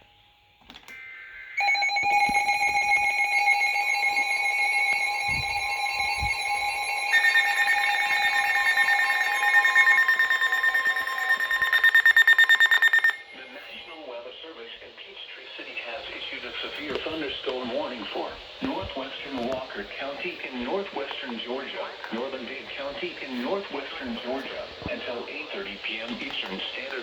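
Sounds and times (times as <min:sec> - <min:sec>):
electronic alert tones: 0:01.6 - 0:14.0
rapid beeping: 0:01.6 - 0:14.6.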